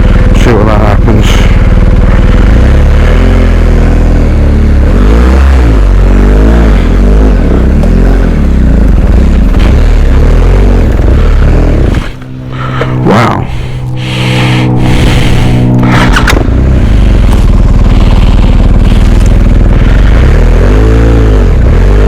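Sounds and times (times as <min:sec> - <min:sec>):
motorcycle engine revving: 0:00.0 - 0:22.0.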